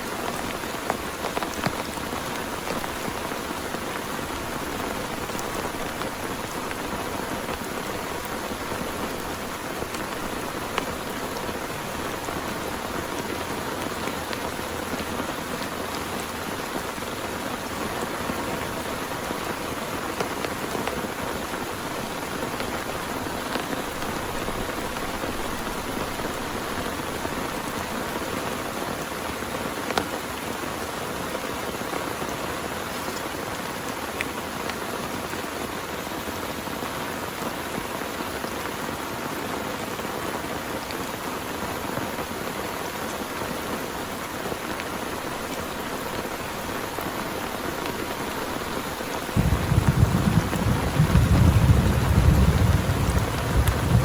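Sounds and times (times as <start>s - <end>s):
heavy rain: 0.0s - 54.0s
rain drop ticks: 0.2s - 16.3s, 44.7s - 54.0s
low thunder rumble: 49.4s - 54.0s.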